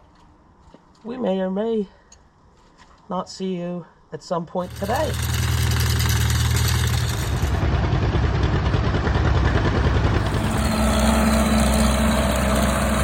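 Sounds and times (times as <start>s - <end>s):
engine running: 4.6s - 13.0s.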